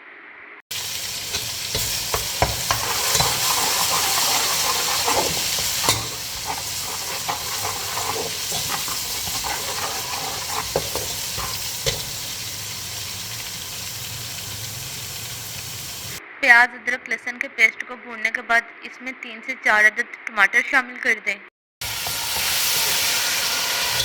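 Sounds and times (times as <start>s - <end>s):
onions sizzling in oil: 0.7s - 16.2s, 21.8s - 24.0s
spoon scraping pot: 0.8s - 16.2s, 22.0s - 23.1s.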